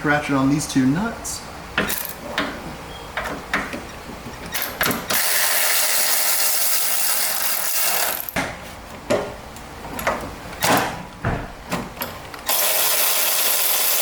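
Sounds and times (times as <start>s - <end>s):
tool clicking and knocking on fittings: 1.8s - 2.6s, 3.2s - 5.2s
electric ratchet spinning: 4.5s - 8.4s, 12.5s - 14.0s.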